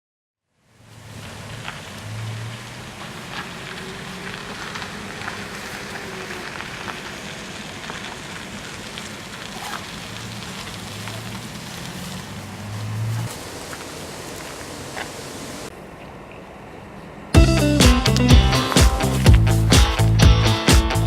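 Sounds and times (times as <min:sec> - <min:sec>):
steady hiss: 0:00.6 - 0:16.0.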